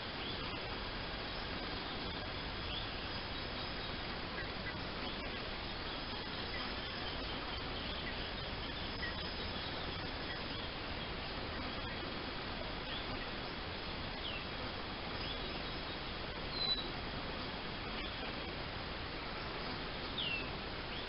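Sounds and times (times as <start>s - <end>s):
outdoor background noise: 0.0s - 21.0s
faint high chirps: 16.5s - 17.0s.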